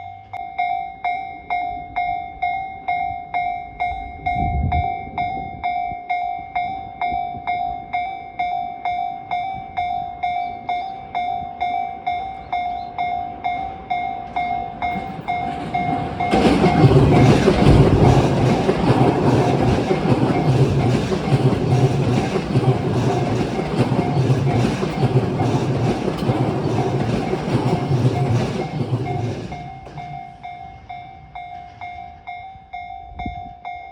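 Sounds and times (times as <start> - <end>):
level-crossing warning bell ringing: 0.0 - 33.9
train wheels over rail joints: 10.6 - 33.9.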